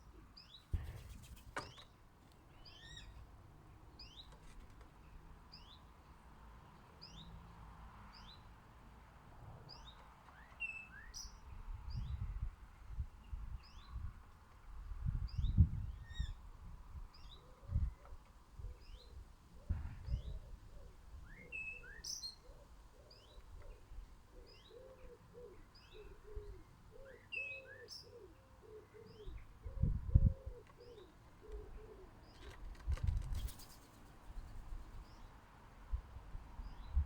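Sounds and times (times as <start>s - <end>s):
wingbeats fluttering: 0.7s - 1.8s, 32.4s - 35.1s
dove cooing: 22.4s - 32.5s.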